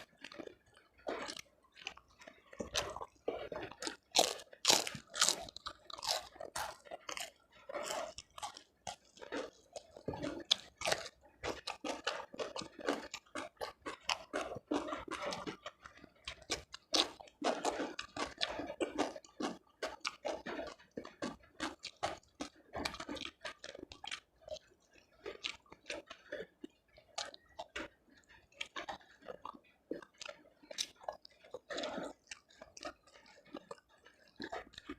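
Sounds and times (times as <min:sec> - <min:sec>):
person chewing crunchy food: 0:00.0 - 0:34.9.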